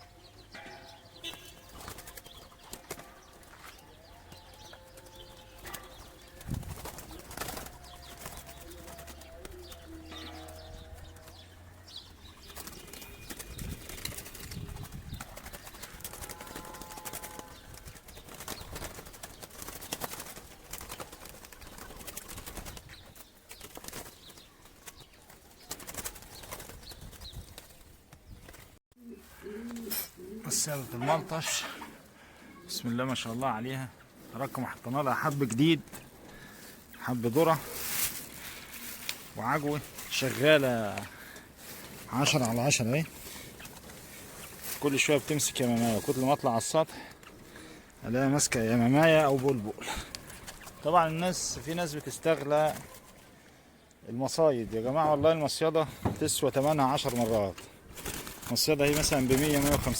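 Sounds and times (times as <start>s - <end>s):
doves cooing: 0.0s - 27.2s, 29.0s - 53.9s
doves flapping wings: 1.2s - 28.8s, 34.8s - 46.1s, 46.8s - 53.3s, 56.2s - 59.9s.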